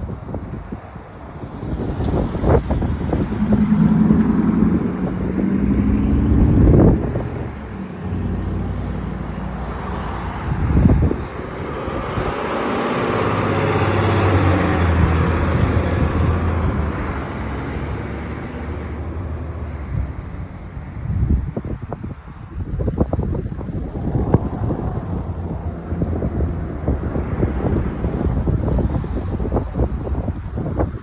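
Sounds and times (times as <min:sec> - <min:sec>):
wind noise on microphone: 0:00.0 - 0:31.0
vehicle engine running: 0:01.5 - 0:08.6.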